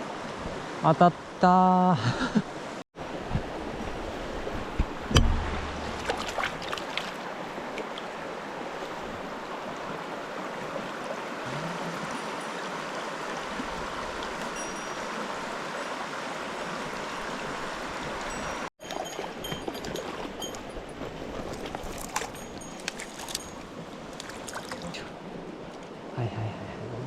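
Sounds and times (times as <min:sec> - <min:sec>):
water rushing over rocks: 0:02.6 - 0:20.8.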